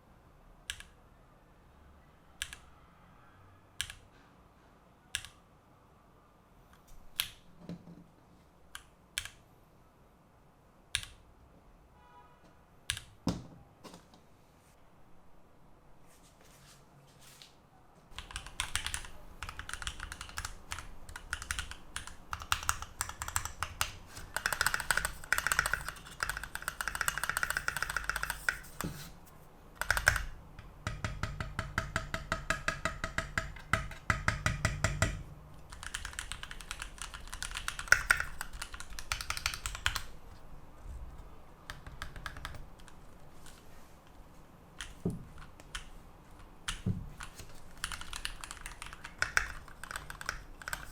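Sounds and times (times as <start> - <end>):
mechanical keyboard typing: 18.1 - 29.1, 29.8 - 40.2, 41.2 - 43.6, 44.8 - 46.0, 46.6 - 50.9.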